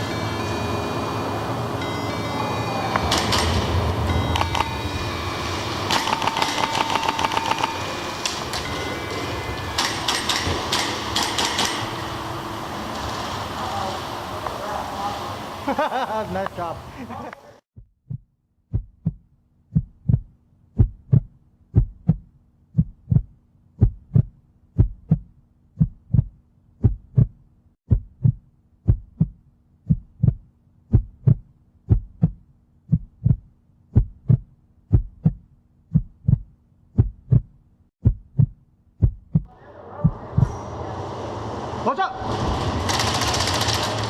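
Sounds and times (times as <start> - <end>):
game noise: 2.1 - 10.1
heartbeat double thump: 17.8 - 40.6.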